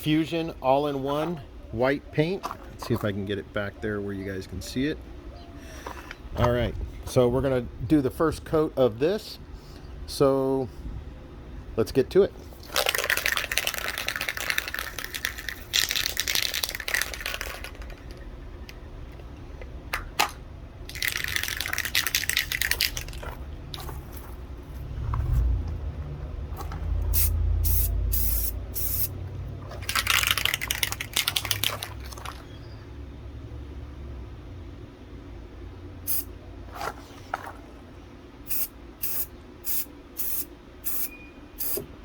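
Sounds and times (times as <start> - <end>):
spray paint can hissing: 12.7 - 18.0, 20.9 - 23.2, 27.1 - 29.1, 29.8 - 31.8, 36.1 - 36.3, 38.5 - 41.8.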